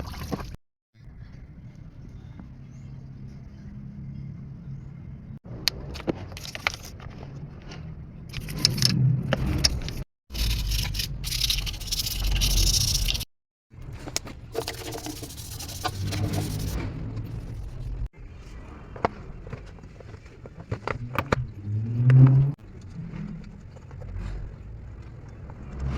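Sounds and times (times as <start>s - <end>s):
tools scraping: 8.3s - 13.3s, 14.5s - 18.1s.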